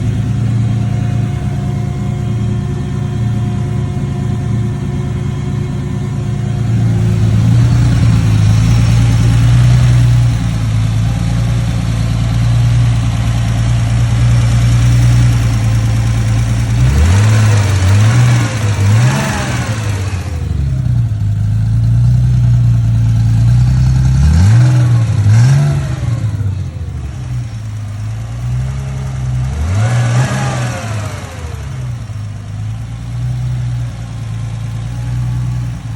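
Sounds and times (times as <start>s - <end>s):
car engine idling with ticking: 0.0s - 35.9s
engine revving blips: 14.9s - 21.2s, 23.3s - 27.6s, 28.4s - 32.5s.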